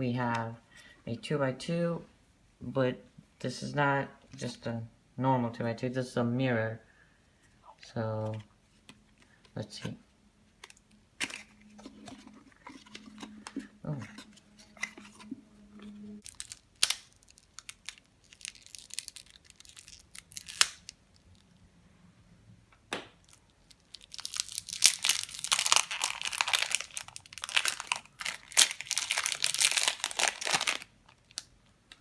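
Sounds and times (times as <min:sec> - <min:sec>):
packaging clicks and rustles: 0:10.6 - 0:15.4, 0:16.2 - 0:21.5, 0:23.2 - 0:32.0
packaging crinkling and tearing: 0:16.2 - 0:21.6, 0:23.2 - 0:31.6.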